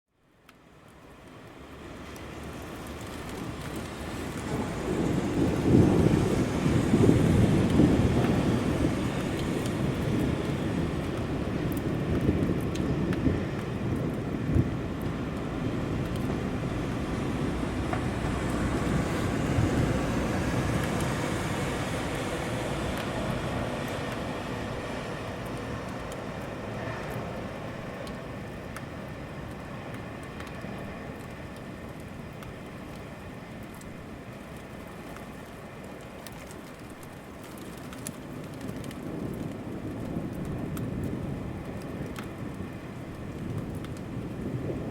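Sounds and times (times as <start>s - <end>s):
rain falling: 0.2s - 44.9s
faint drip ticks: 0.4s - 4.4s, 27.9s - 44.1s.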